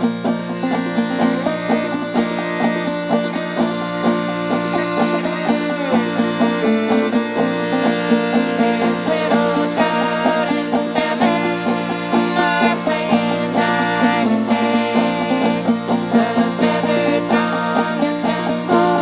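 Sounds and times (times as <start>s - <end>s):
clawhammer banjo: 0.0s - 19.0s
other string instruments: 0.0s - 19.0s.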